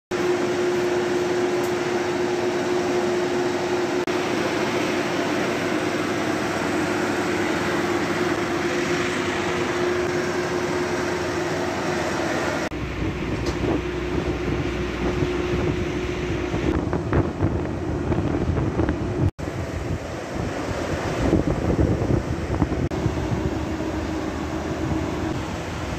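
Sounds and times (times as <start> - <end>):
steady mechanical hum: 0.1 - 25.9
rough low gusty noise: 6.5 - 25.9.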